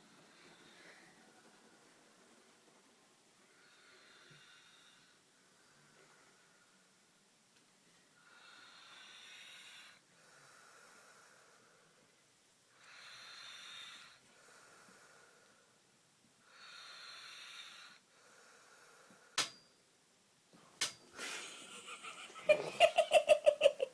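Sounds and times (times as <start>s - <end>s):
wheezy snoring: 12.8s - 14.2s, 16.5s - 18.0s
giggling laughter: 21.2s - 23.9s.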